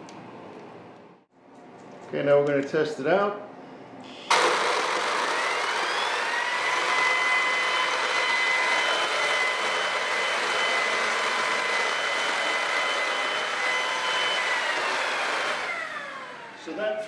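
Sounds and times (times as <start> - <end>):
stick vacuum whining: 4.1 - 17.0.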